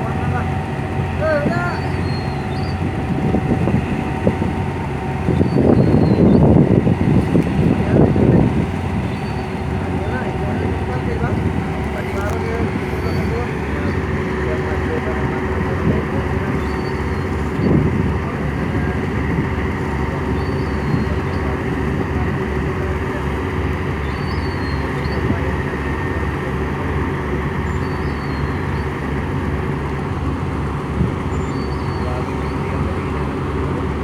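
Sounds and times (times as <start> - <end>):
diesel engine throbbing: 0.0 - 34.0.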